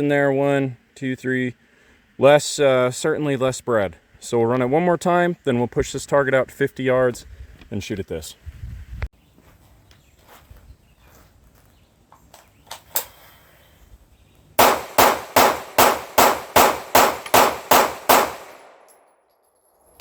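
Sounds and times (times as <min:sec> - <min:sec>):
pistol shots: 0:14.6 - 0:19.0.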